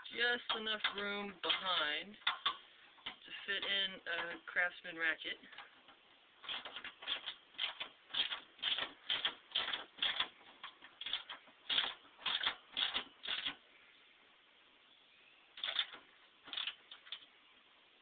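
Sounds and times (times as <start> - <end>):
hand ratchet clicking: 5.5 - 13.6, 15.6 - 17.2.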